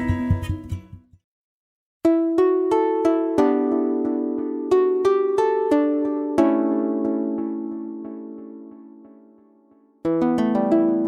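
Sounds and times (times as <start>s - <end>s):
quick plucked notes: 0.0s - 1.2s
background music: 2.1s - 11.0s.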